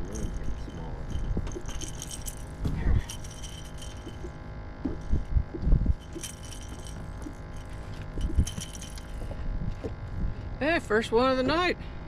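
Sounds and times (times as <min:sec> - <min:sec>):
light metallic clinking: 0:00.0 - 0:05.2, 0:06.0 - 0:09.4.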